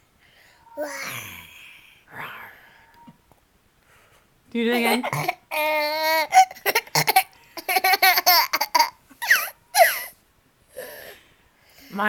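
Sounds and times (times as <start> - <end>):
toddler laughing: 5.0 - 10.1.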